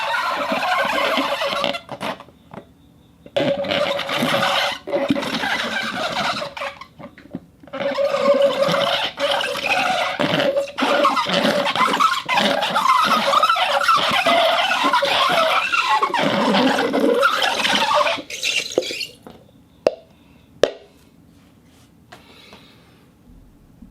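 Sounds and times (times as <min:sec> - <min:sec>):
rubber band squeaking: 0:00.0 - 0:02.3, 0:03.4 - 0:19.3.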